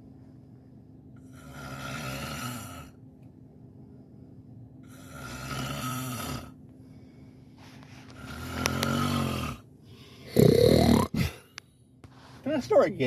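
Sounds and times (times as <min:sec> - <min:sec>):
person snoring: 0:01.2 - 0:03.0, 0:04.9 - 0:06.6, 0:08.1 - 0:09.6, 0:10.2 - 0:11.5.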